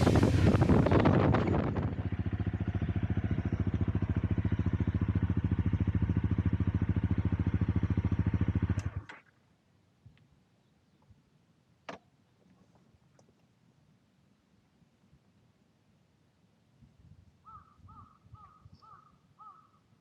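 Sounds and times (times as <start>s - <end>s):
wind noise: 0.0s - 3.4s
motorcycle engine idling: 0.0s - 9.1s.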